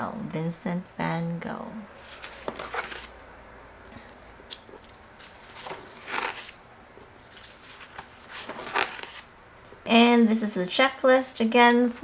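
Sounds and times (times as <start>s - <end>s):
paper pages rustling: 2.0s - 3.2s, 4.5s - 6.6s, 7.2s - 9.3s.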